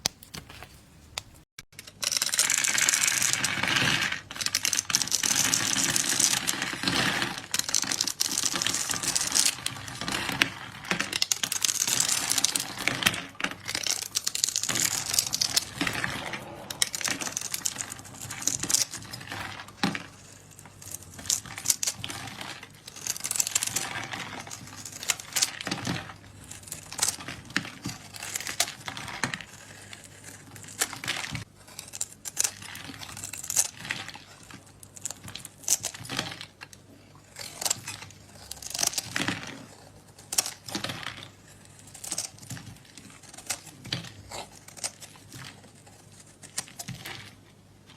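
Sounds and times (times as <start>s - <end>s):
dense crinkling and crackling: 0.0s - 1.5s.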